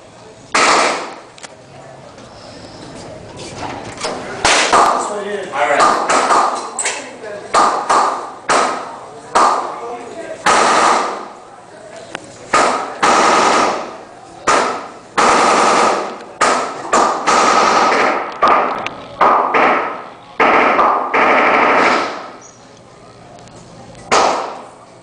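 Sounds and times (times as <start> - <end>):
gunshots with echo: 0.6 - 1.2, 4.4 - 5.0, 10.4 - 11.3, 12.5 - 22.4, 24.1 - 24.7
rapid automatic gunfire: 10.4 - 11.3, 12.6 - 13.9, 14.5 - 18.7, 19.5 - 22.3.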